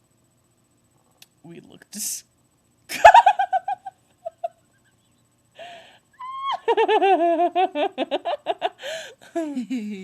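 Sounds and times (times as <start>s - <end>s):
girl giggling: 2.9s - 4.7s, 6.2s - 10.0s
breathy gasp: 5.6s - 6.1s, 8.8s - 9.3s
high squeal and laughter: 6.2s - 7.0s.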